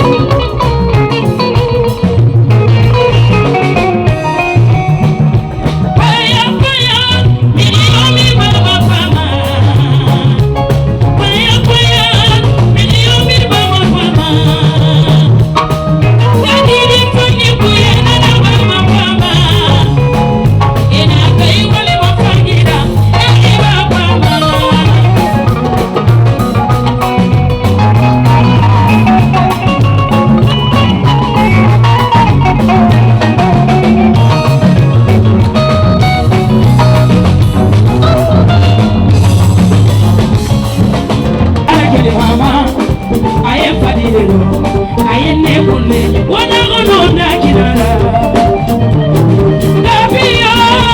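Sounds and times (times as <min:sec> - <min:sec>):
person singing: 0:05.6 - 0:26.0, 0:41.6 - 0:50.9.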